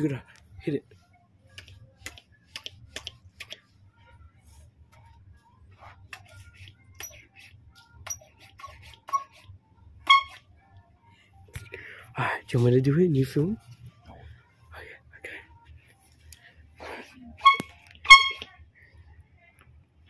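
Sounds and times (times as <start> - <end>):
low steady hum: 0.0 - 8.1.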